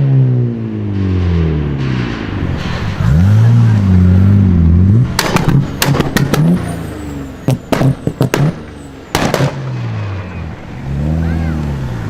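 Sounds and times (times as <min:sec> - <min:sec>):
car engine revving and idling: 0:00.0 - 0:12.0
exhaust pops and bangs: 0:04.9 - 0:10.2.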